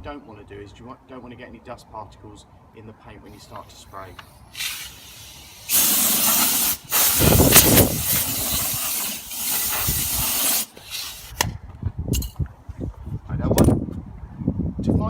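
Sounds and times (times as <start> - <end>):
compressed air blow gun hissing: 3.3 - 11.4.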